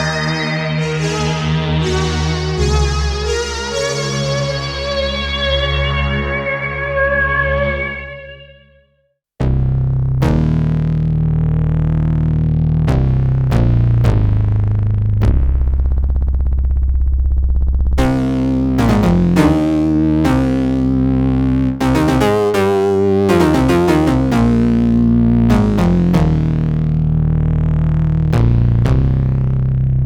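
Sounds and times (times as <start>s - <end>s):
synthesizer low bass chord: 0.0s - 8.6s, 9.4s - 30.0s
synthesizer struck notes: 15.2s - 29.4s.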